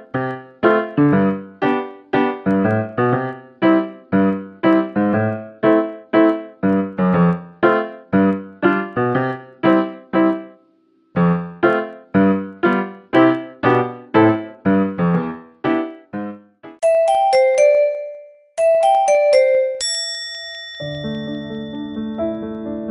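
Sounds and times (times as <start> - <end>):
piano chords: 0.0 - 19.8, 20.8 - 22.9.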